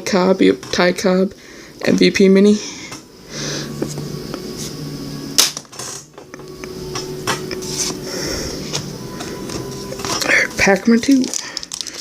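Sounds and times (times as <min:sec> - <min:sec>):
cards clicking and rustling: 0:09.5 - 0:12.0.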